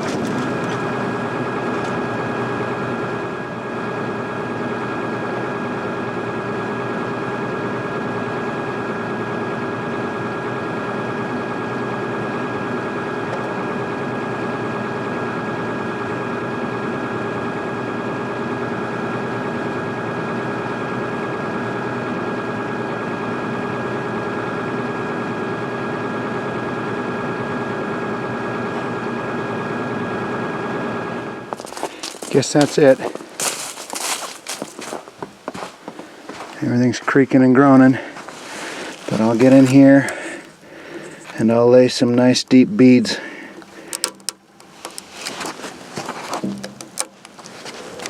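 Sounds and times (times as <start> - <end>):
machine running: 0.0 - 9.7, 30.9 - 35.4, 38.1 - 41.3.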